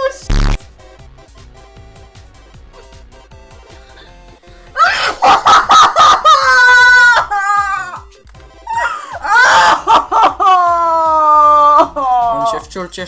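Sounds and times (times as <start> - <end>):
quiet background music: 0.0 - 13.0
girl shrieking: 4.8 - 8.1, 8.7 - 12.5.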